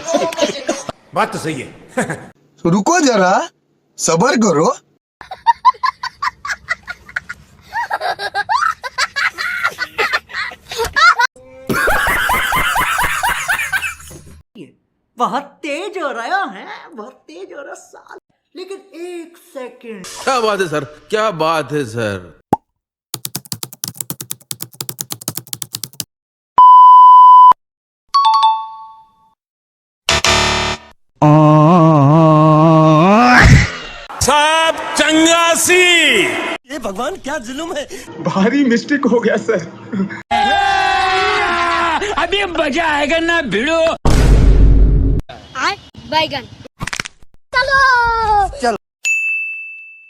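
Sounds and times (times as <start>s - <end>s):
keyboard typing clicks: 23.2s - 26.1s.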